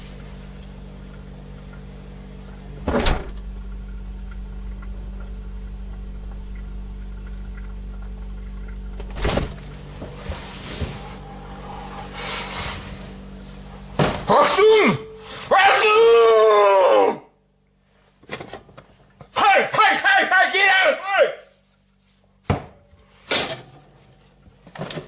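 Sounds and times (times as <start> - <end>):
steady low hum: 0.0 - 15.9
door banging: 2.9 - 3.4.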